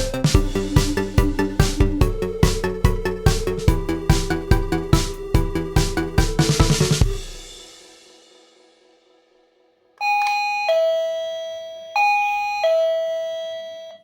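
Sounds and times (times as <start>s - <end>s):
drum-beat music: 0.0s - 8.7s
doorbell ding-dong chime: 10.0s - 14.0s.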